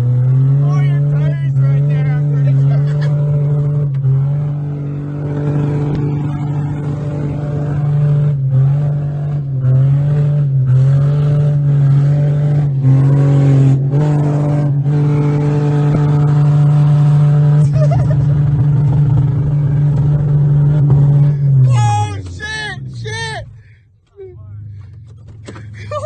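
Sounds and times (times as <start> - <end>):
car engine at high revs: 0.0 - 26.0.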